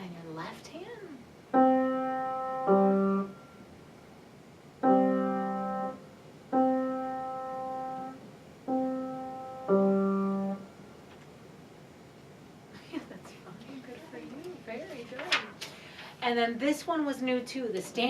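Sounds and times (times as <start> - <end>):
low piano notes: 4.8 - 10.7.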